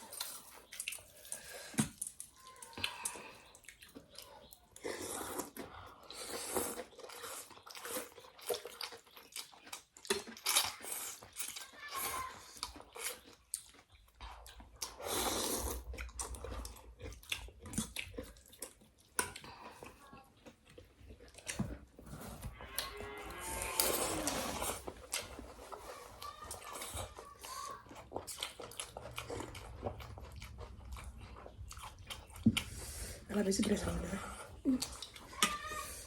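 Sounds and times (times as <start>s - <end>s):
people chewing: 0.0s - 36.0s
people slurping noodles: 4.8s - 9.0s, 14.3s - 16.3s, 22.0s - 31.2s.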